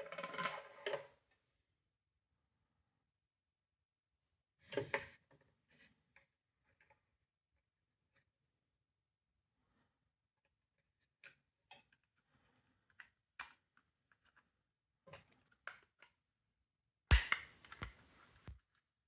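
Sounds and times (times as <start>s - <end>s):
loud sharp plastic crack: 17.1s - 18.6s.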